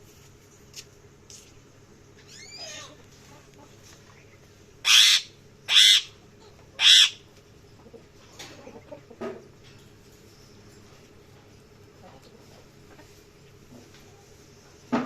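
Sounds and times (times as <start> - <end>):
parrot harsh calls: 2.3 - 3.0, 4.8 - 7.2
parrot soft chattering: 4.8 - 7.2.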